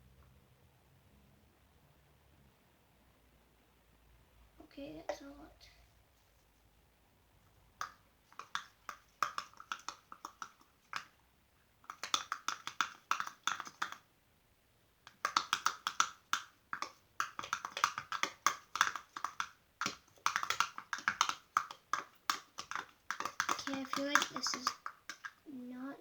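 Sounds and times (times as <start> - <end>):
slime squelching: 7.7 - 11.2, 11.8 - 14.0, 15.1 - 26.0.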